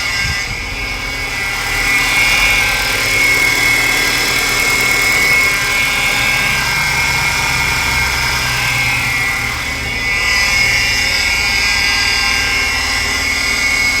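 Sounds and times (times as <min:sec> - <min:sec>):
high-pitched pulley whine: 0:00.0 - 0:14.0
car engine running: 0:00.5 - 0:10.7.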